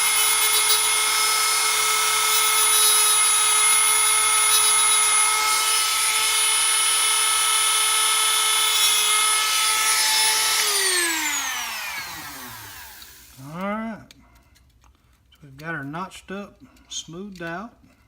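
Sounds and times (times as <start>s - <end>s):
rotary tool whining: 0.0s - 13.6s.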